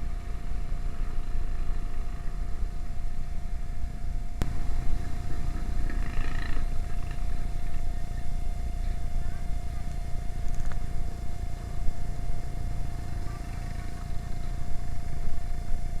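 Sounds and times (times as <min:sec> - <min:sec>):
scooter engine: 0:04.4 - 0:08.0, 0:12.5 - 0:14.7
thin hum: 0:04.4 - 0:15.6.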